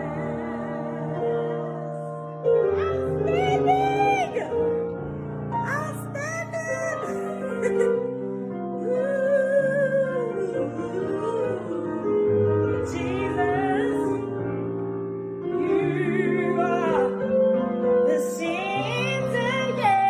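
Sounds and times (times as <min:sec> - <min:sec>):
person singing with vibrato: 0:02.8 - 0:04.8, 0:05.6 - 0:08.1, 0:08.7 - 0:12.1.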